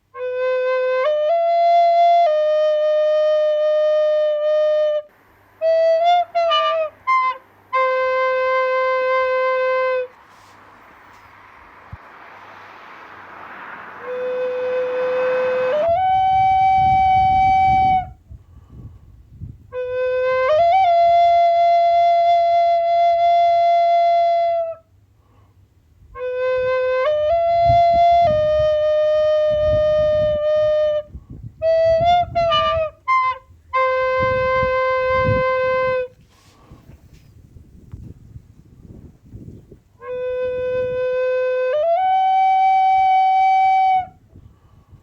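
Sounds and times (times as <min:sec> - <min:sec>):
slow flute melody: 0:00.0 - 0:11.3, 0:14.0 - 0:18.2, 0:19.6 - 0:25.0, 0:26.1 - 0:36.7, 0:40.0 - 0:44.2
low rumbling noise: 0:05.0 - 0:22.1.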